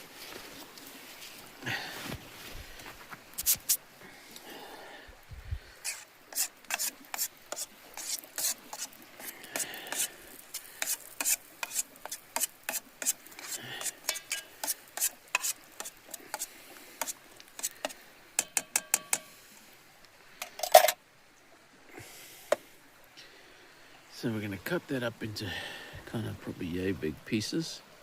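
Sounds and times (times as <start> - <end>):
utensil scraping metal pot: 5.8 - 19.3, 20.4 - 21.0.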